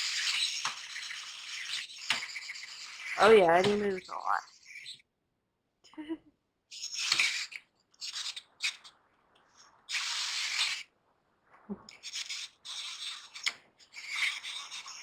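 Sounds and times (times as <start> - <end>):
clockwork toy mechanism whirring: 0.0 - 3.8.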